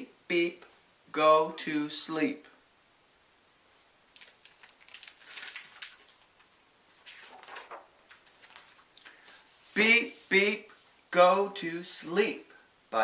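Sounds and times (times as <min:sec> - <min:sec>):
picture book pages rustling: 0:04.1 - 0:11.1.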